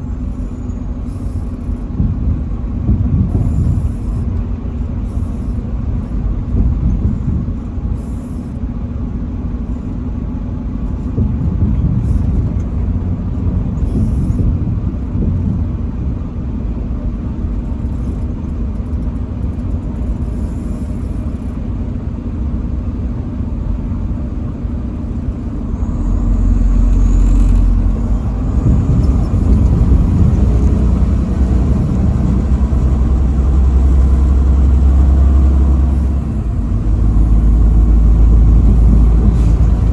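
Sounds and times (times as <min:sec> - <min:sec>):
road noise: 0:00.0 - 0:39.9
truck engine rumble: 0:00.0 - 0:39.9.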